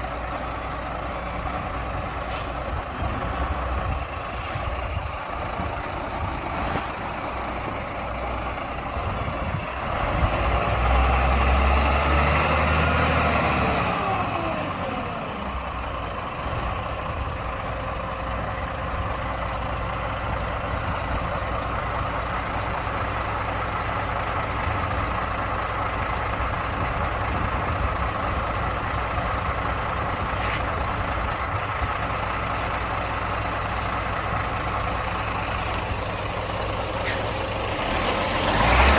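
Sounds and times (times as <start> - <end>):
diesel truck engine idling and revving: 0.0 - 38.9
brief hiss: 37.0 - 37.4.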